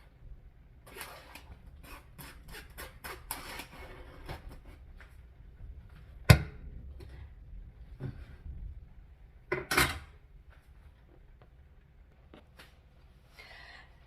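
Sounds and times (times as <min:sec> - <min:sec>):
utensils clicking and scraping: 0:00.8 - 0:04.4.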